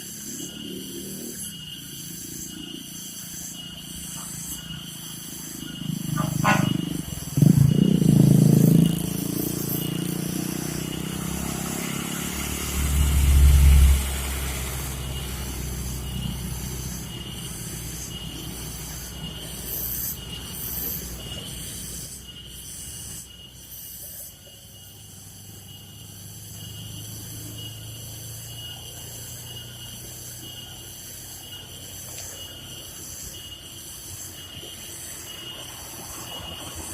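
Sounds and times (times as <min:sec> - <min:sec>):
dump truck engine labouring: 0:06.1 - 0:09.0.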